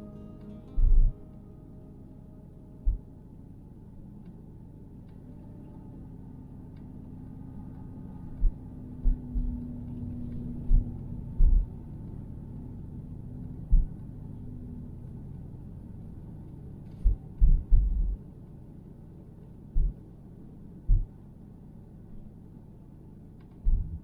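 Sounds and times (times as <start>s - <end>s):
low hum: 0.0s - 24.0s
dull low thumps: 0.8s - 1.2s, 2.8s - 3.1s, 8.3s - 11.8s, 13.6s - 14.0s, 17.0s - 18.2s, 19.8s - 20.0s, 20.8s - 21.2s, 23.6s - 24.0s
car rumbling on the move: 7.2s - 16.1s.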